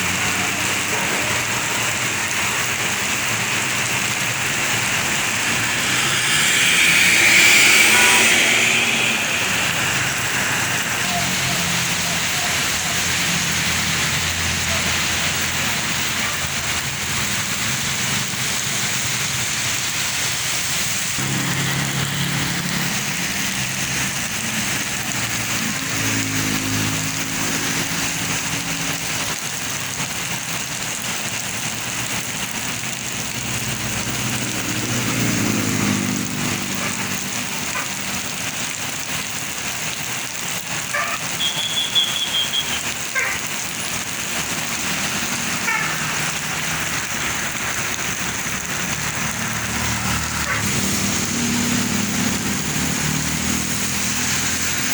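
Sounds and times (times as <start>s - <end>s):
steady traffic hiss: 0.0s - 29.9s, 32.6s - 54.9s
large vehicle engine drone: 0.0s - 30.4s, 31.0s - 41.0s, 42.8s - 54.9s.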